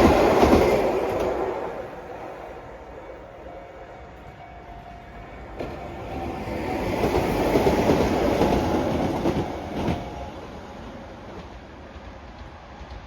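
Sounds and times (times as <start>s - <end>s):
train wheels clacking over rail joints: 0.0s - 2.1s.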